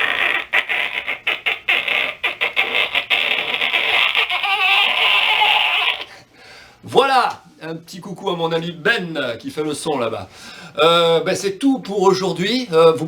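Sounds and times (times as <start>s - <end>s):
person imitating geiger counter clicks: 0.0s - 6.1s.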